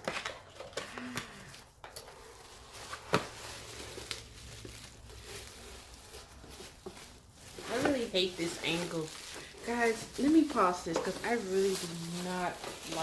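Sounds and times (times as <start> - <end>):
packaging crinkling: 0.0 - 13.0.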